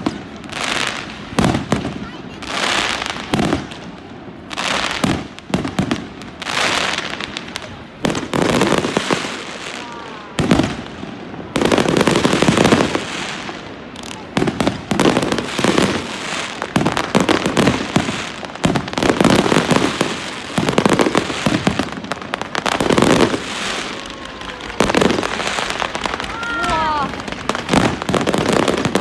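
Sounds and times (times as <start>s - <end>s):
fireworks crackling: 0.0s - 29.0s
firework shells bursting: 14.8s - 29.0s.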